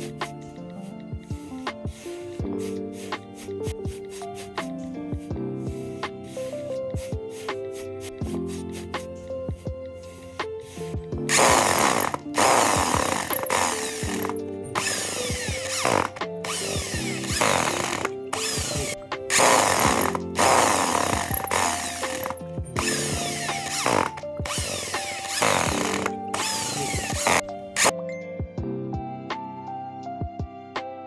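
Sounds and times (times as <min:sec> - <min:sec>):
background music: 0:00.0 - 0:31.0
power tool working wood: 0:11.3 - 0:27.9.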